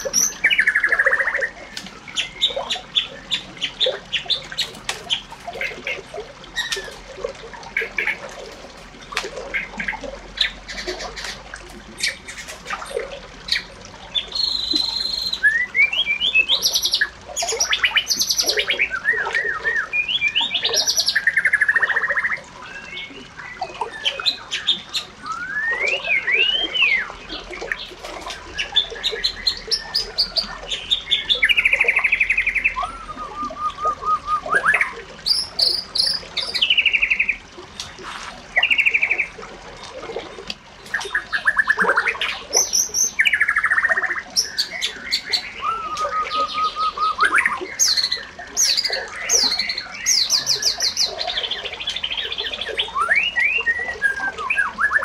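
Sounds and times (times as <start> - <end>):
birds chirping: 0.0 - 55.0.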